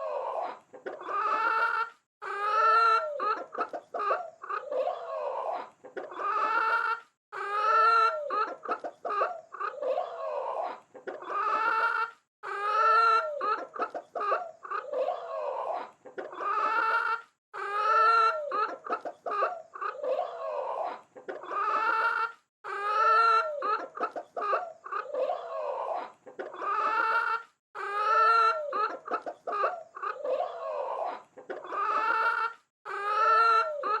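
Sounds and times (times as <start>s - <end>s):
chickens clucking: 0.0s - 34.0s.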